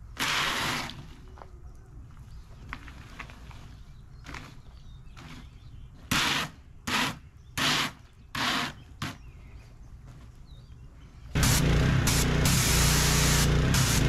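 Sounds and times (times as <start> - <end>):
machine humming: 11.4 - 14.0
pressure washer spraying: 11.4 - 14.0.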